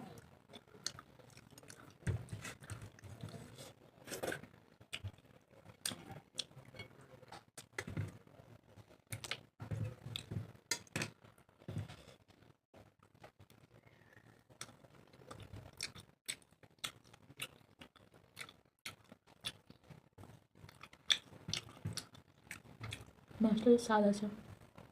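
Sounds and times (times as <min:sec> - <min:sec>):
person chewing wet smacks: 0:00.2 - 0:03.3, 0:09.1 - 0:09.4, 0:14.6 - 0:23.1.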